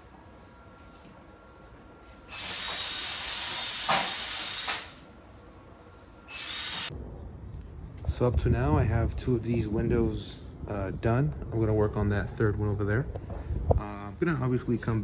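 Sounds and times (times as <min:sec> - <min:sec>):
arc welding hiss: 0:02.3 - 0:05.0, 0:06.3 - 0:06.9.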